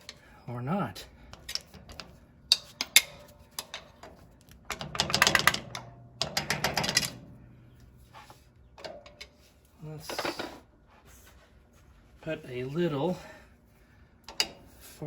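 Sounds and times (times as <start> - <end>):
hand tools clicking on metal: 1.3 - 7.2.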